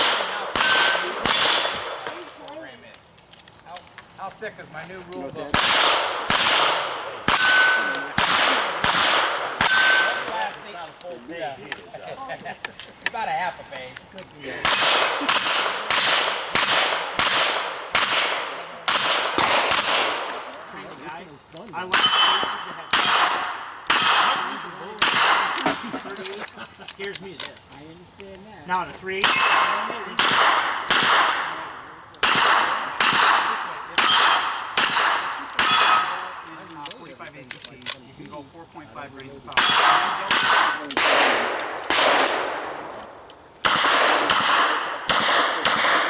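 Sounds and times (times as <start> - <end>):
steel target plates ringing: 7.3 - 8.0, 14.7 - 15.9, 21.9 - 23.2, 34.0 - 36.1.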